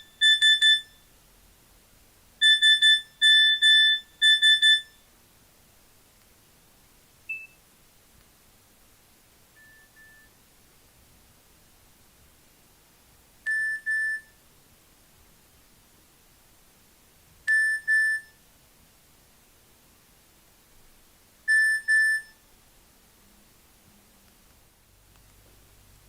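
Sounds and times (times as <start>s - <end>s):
phone double beep: 0.0s - 1.0s, 2.4s - 5.0s, 7.3s - 7.6s, 9.6s - 10.3s, 17.5s - 18.4s, 21.5s - 22.4s.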